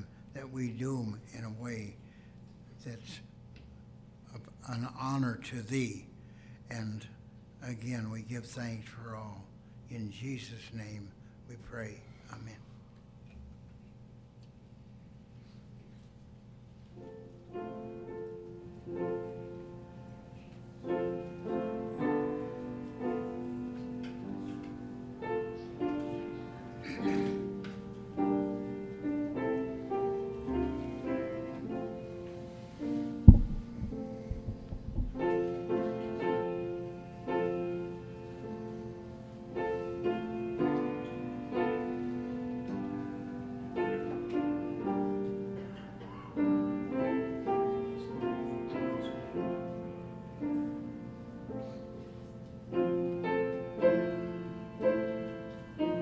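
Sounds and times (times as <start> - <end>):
piano playing slow piece: 16.8 - 56.0
sharp low thump: 33.3 - 35.2.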